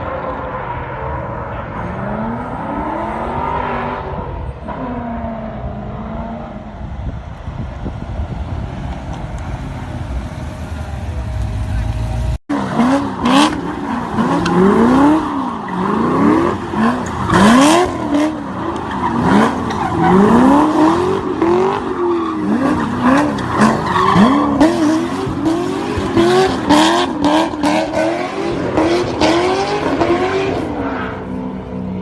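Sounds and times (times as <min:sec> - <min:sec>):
car engine revving: 0:00.0 - 0:07.1, 0:08.3 - 0:32.0
tyres squealing and skidding: 0:11.1 - 0:31.5.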